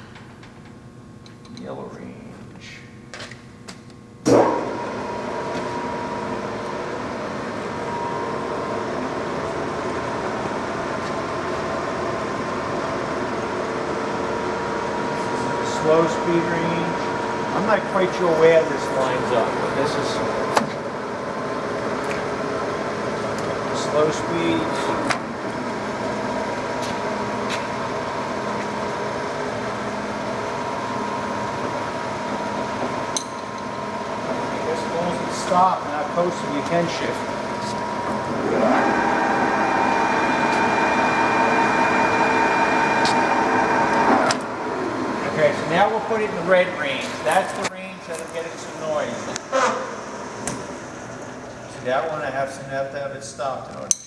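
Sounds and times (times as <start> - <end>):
lathe gear drive hum: 4.2 - 52.1
lathe whine: 4.3 - 52.6.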